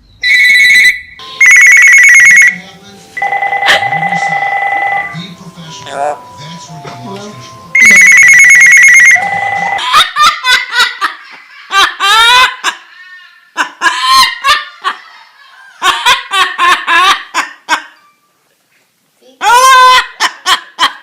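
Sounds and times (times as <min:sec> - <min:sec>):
pulsing telephone-like ring: 0:00.5 - 0:02.6, 0:03.2 - 0:05.2, 0:07.8 - 0:09.8
parrot mimicking laughter: 0:09.8 - 0:18.0, 0:19.4 - 0:21.0.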